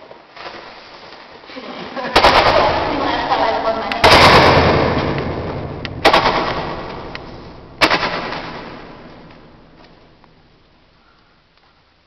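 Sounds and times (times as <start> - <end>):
roman candle pops with long echo: 2.1 - 10.6.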